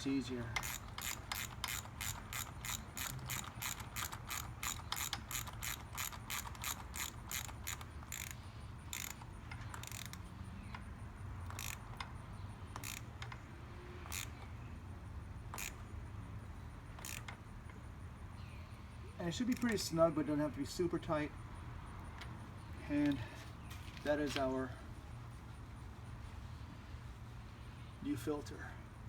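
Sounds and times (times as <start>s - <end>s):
socket ratchet clicking: 0.0s - 14.7s, 15.3s - 18.0s, 19.1s - 20.1s.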